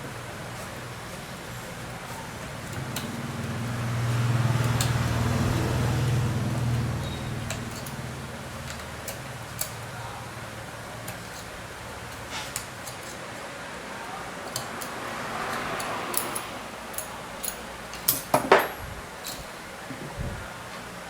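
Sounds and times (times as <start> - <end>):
hard objects clicking and tapping: 14.5 - 20.1.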